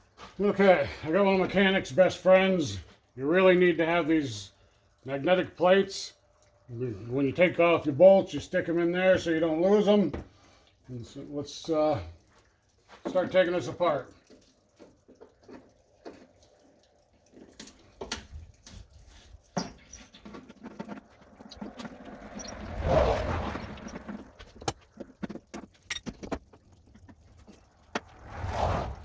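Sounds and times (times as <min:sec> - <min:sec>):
loud rustle: 0:21.0 - 0:24.6
hand tools and bolts clicking: 0:24.4 - 0:28.1.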